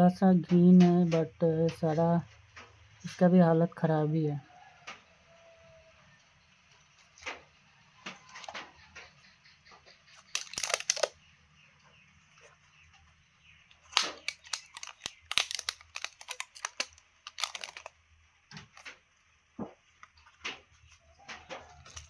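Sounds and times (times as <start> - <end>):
crinkling and rustling plants: 0.0 - 22.0.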